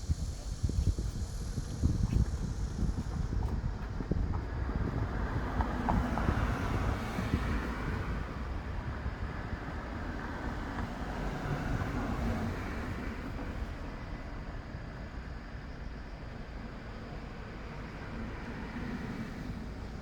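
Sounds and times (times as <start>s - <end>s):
strong wind buffeting microphone: 0.0s - 15.4s.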